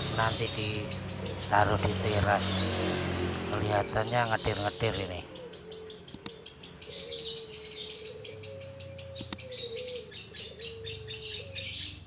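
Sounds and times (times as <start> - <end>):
lovebird chirping rapidly: 0.0 - 12.0
sharp clicks: 6.1 - 6.4, 9.2 - 9.4.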